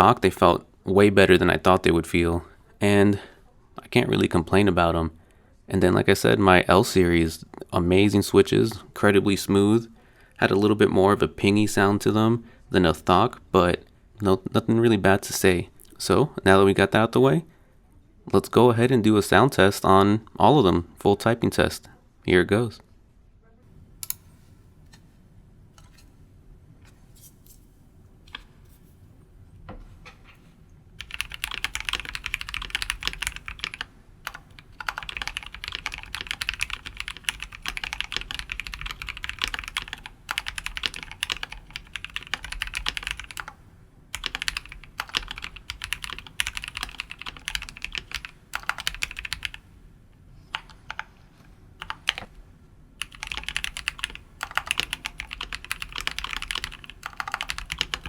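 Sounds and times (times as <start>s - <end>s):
typing on mechanical keyboard: 31.0s - 49.6s, 50.5s - 51.1s, 51.8s - 52.3s, 53.0s - 58.0s.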